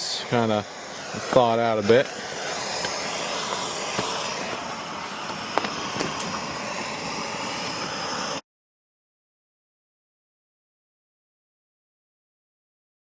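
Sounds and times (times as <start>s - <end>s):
propane torch hissing: 0.0s - 8.4s.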